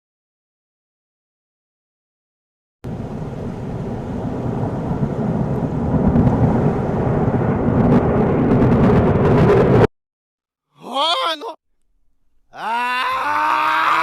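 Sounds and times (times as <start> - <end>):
loud rough rumbling: 2.8 - 9.9.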